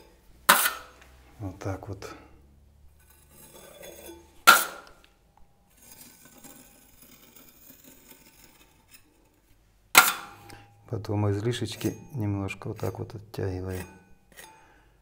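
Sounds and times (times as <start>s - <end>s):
blade scraping wet plaster: 0.5s - 1.0s, 2.9s - 5.1s, 5.7s - 10.6s, 12.6s - 14.8s.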